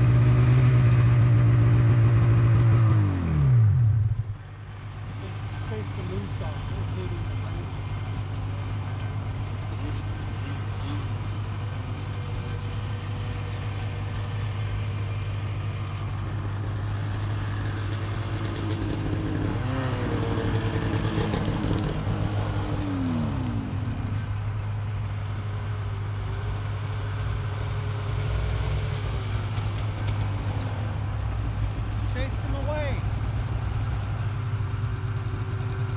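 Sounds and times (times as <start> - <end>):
snowmobile engine running: 0.0 - 35.9.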